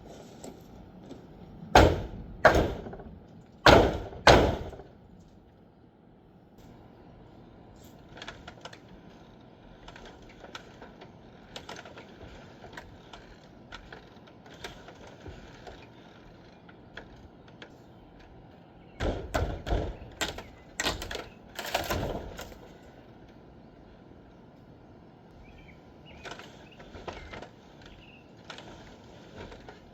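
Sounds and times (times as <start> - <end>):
demolition thuds and bangs: 1.7 - 4.9.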